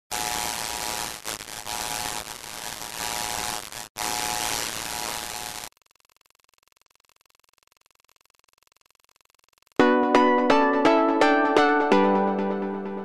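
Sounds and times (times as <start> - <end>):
loud static hiss: 0.1 - 5.7.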